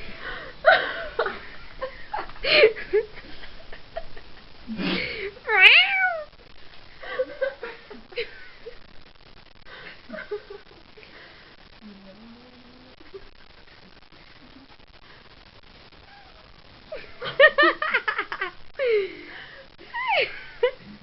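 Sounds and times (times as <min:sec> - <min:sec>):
cat meowing and yowling: 0:05.5 - 0:06.3.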